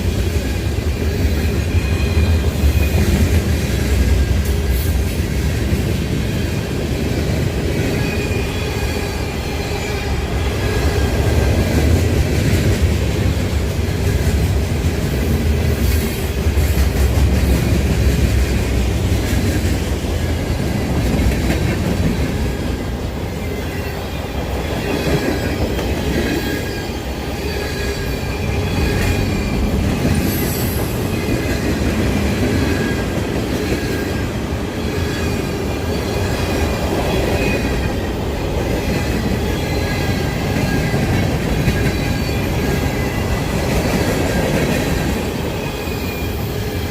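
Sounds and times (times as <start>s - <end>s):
train wheels rumbling on rail: 0.0s - 46.9s
wheel squeal: 23.4s - 38.1s, 38.7s - 46.9s.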